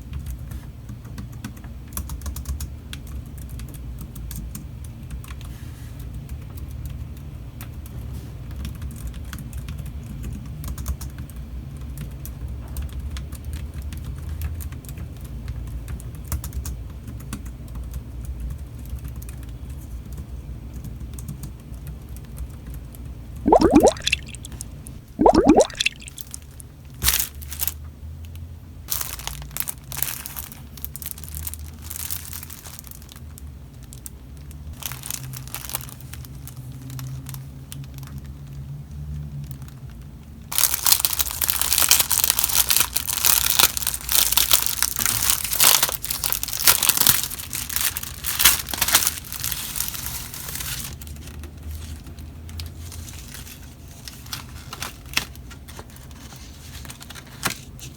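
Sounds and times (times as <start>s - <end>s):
plastic packaging crinkling: 28.9s - 33.2s, 34.8s - 36.2s, 40.6s - 50.9s.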